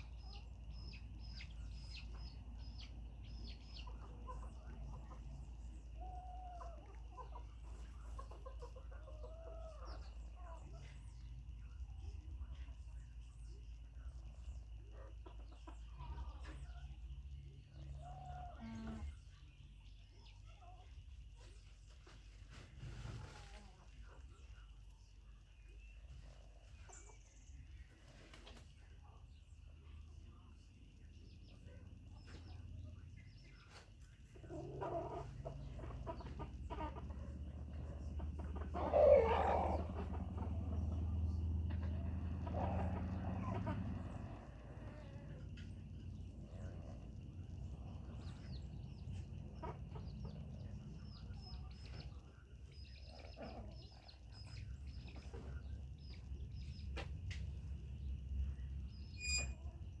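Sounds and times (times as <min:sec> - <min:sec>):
chickens clucking: 0:00.0 - 1:00.0
lower chicken calls: 0:34.4 - 0:45.4
steady low rumble: 0:39.8 - 0:53.2, 0:53.8 - 1:00.0.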